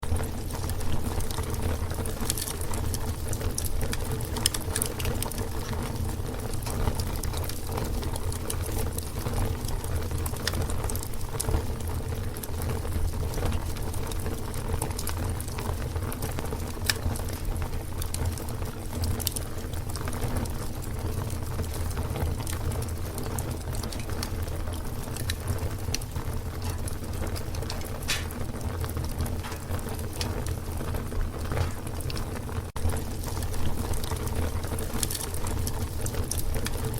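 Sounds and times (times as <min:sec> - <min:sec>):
fire crackling and popping: 0:00.0 - 0:36.9
low rush of flame: 0:13.6 - 0:36.9.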